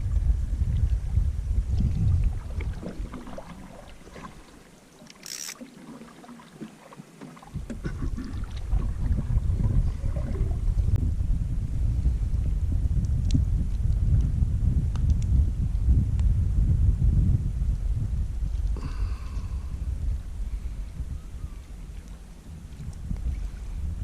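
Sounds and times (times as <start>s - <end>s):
wind rumbling on microphone: 0.0s - 4.6s, 7.4s - 24.0s
paddle splashes and knocks: 1.7s - 10.6s.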